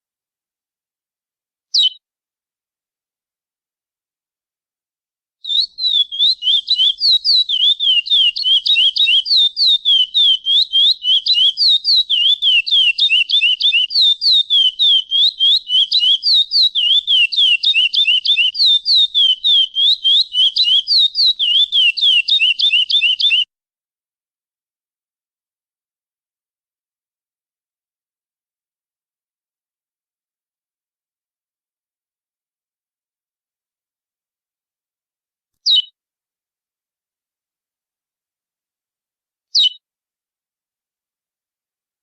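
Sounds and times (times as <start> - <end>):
finch singing whistled notes: 1.7 - 2.0, 5.4 - 23.5, 35.6 - 35.9, 39.5 - 39.8.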